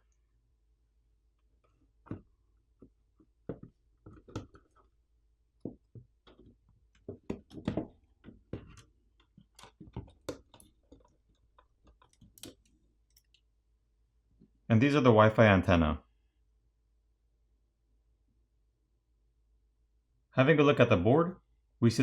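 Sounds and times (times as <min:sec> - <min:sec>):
computer parts clicking and knocking: 0:02.0 - 0:05.0, 0:05.6 - 0:13.4.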